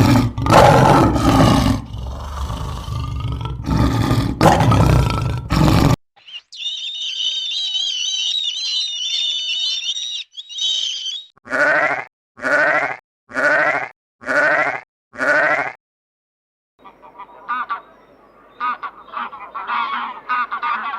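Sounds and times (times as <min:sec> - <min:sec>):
deep roar: 0:00.0 - 0:06.0
goat bleating: 0:11.5 - 0:15.7.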